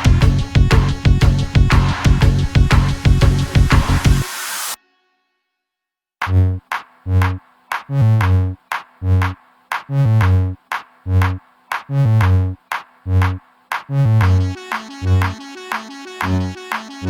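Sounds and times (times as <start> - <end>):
drum machine beat: 0.0 - 4.2, 6.7 - 17.0
deep synth bass notes: 0.0 - 4.3, 6.2 - 17.0
held synth tone: 14.4 - 17.0.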